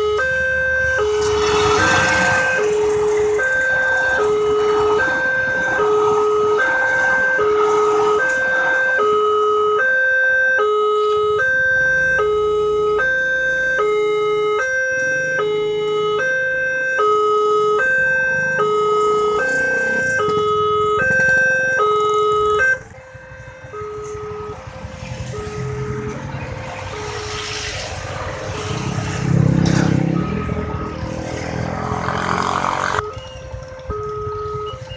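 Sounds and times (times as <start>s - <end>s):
two-tone crossing siren: 0.0s - 34.9s.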